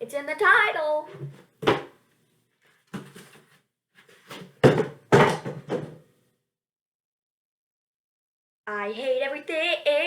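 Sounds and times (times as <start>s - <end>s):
dull knocks and thumps: 4.5s - 6.0s.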